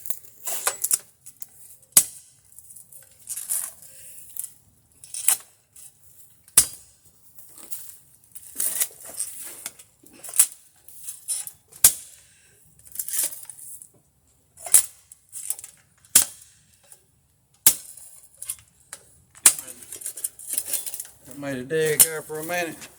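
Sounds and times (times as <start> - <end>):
scrape of soil and stone: 7.5 - 9.8
digging tool clanking on ground: 19.4 - 21.2.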